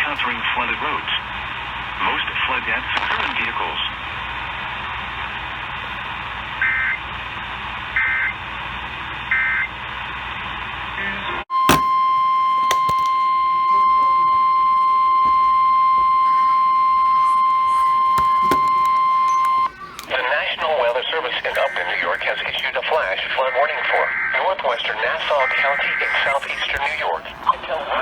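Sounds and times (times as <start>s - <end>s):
radio static: 0.0s - 8.5s, 16.0s - 28.0s
steady weather radio alert tone: 0.0s - 8.6s, 11.0s - 28.0s.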